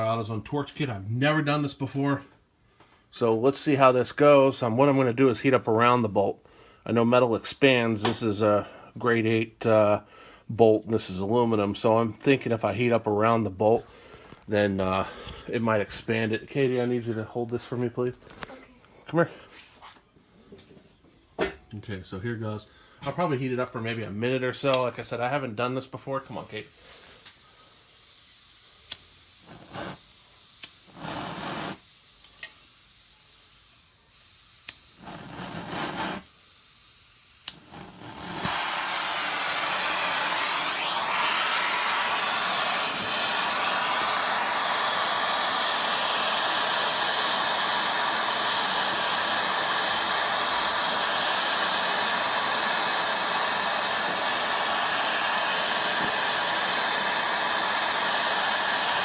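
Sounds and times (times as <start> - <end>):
gas torch flame hissing: 26.2 - 59.0.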